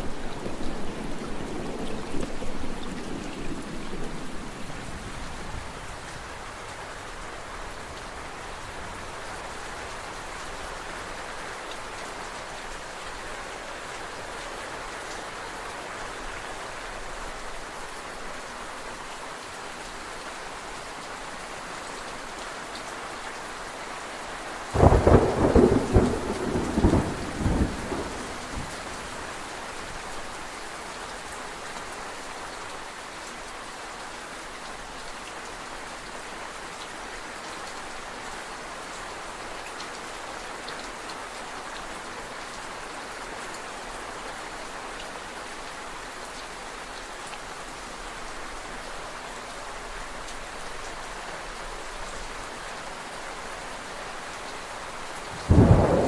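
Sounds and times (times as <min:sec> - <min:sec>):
steady rain falling: 0:00.0 - 0:56.0
loud thunderclap crackling: 0:24.8 - 0:29.3, 0:55.4 - 0:56.0
thunder rumbling: 0:24.8 - 0:29.3, 0:55.4 - 0:56.0.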